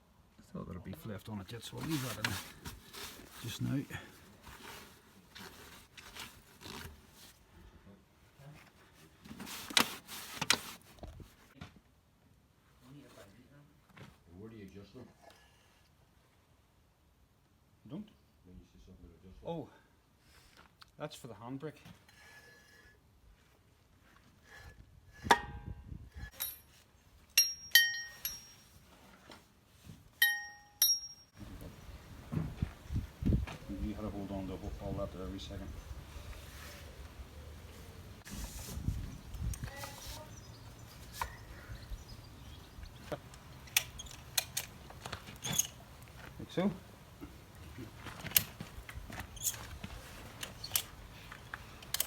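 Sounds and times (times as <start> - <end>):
scraping and rustling handling noises: 0.9 - 11.6, 31.4 - 52.0
metal clinking against metal: 26.3 - 28.8, 30.2 - 31.4
sharp metal knocks: 27.4 - 28.6.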